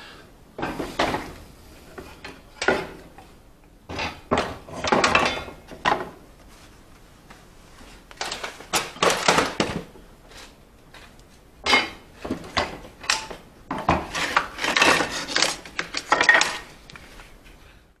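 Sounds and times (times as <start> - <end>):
hard objects knocking and clattering: 3.9 - 6.2, 8.2 - 10.0, 11.6 - 16.8.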